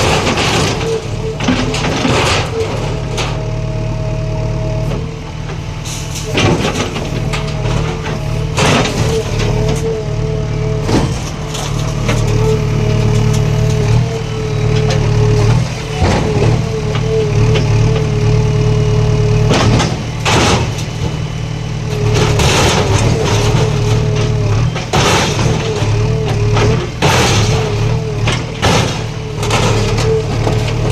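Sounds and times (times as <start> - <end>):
heavy diesel engine running: 0.0 - 30.9
sharp knocks and crashes: 6.2 - 9.9, 10.8 - 14.1, 19.4 - 21.3, 22.0 - 30.9.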